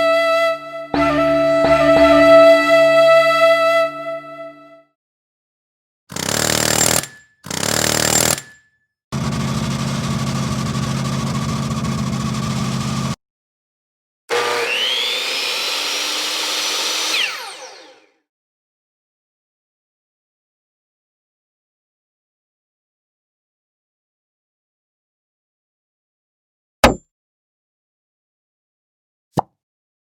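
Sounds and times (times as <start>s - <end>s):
motor whine rising in pitch: 14.4s - 18.1s.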